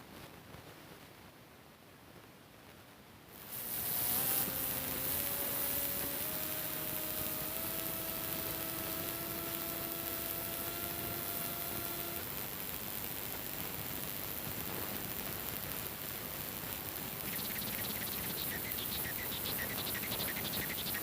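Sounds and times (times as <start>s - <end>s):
cnc machine hissing: 3.4s - 12.4s, 17.2s - 21.0s
machine motor whining tones: 3.5s - 12.3s, 17.3s - 21.0s.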